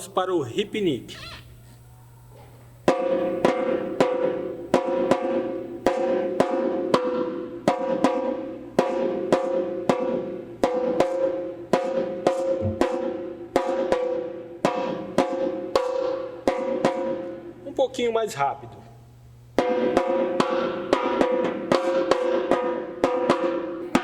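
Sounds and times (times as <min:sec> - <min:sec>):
drum playing a rhythm: 0:02.9 - 0:17.4, 0:19.5 - 0:24.0.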